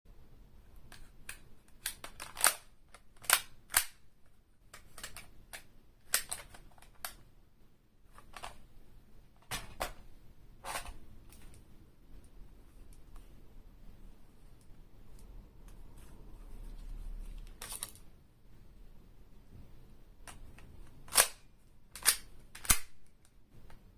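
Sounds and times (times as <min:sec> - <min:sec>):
airsoft gun reloading clicks: 0:22.0 - 0:23.0.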